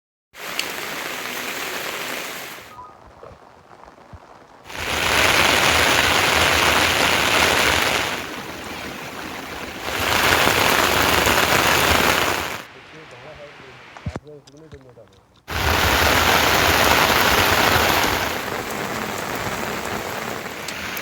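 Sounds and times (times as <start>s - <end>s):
heavy rain falling: 0.4s - 14.2s, 15.5s - 21.0s.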